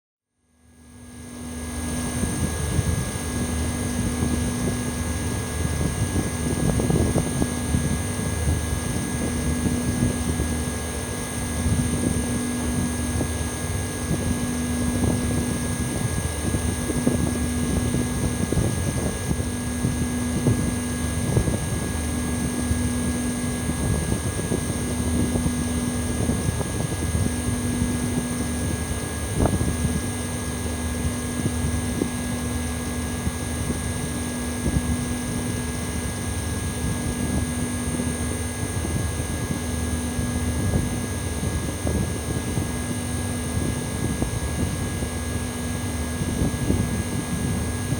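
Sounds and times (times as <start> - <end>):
air conditioner fan and compressor: 0.4 - 47.9.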